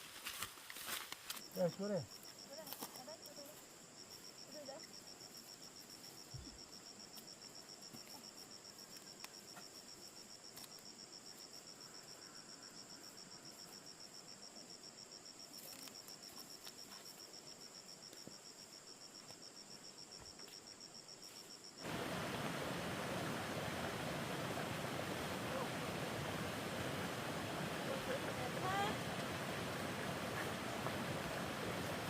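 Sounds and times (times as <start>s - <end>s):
cricket trilling: 1.2s - 32.0s.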